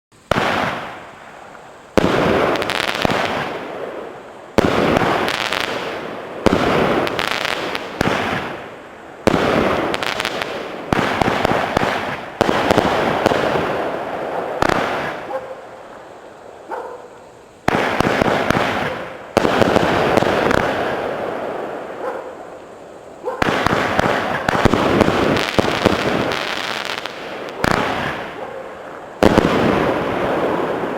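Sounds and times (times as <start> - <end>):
fireworks cake shots: 23.4 - 28.4.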